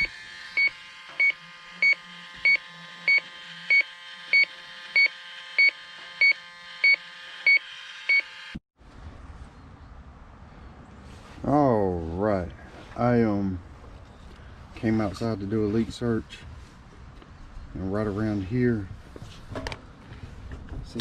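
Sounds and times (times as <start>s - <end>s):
leak detector beeping: 0.0s - 8.6s
faint outdoor background: 8.2s - 21.0s.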